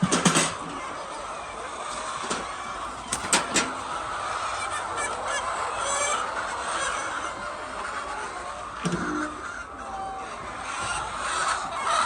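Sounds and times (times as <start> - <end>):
chickens calling: 0.0 - 12.0
sharp clicks: 3.1 - 3.7.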